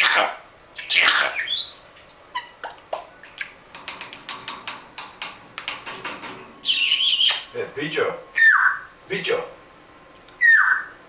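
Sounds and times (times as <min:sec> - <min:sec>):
parrot squawk: 0:00.0 - 0:02.6, 0:08.4 - 0:08.9, 0:10.4 - 0:11.0
parrot clicking: 0:02.6 - 0:07.5.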